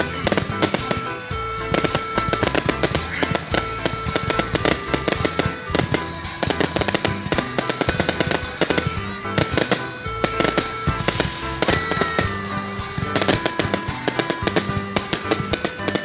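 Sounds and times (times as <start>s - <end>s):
fireworks banging and crackling: 0.0s - 16.0s
music with steady bass: 0.0s - 16.0s.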